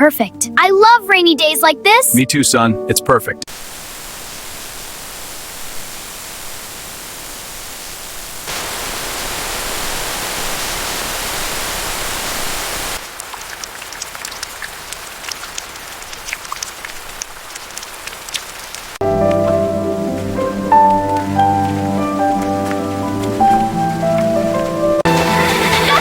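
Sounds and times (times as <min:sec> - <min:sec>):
heavy rain falling: 0:03.5 - 0:26.0
raindrops ticking: 0:13.0 - 0:26.0.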